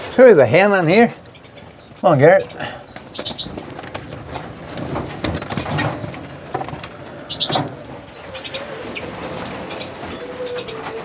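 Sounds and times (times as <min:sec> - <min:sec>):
finches chirping: 0:00.6 - 0:03.6, 0:07.2 - 0:11.0
rustles and knocks: 0:03.0 - 0:08.0.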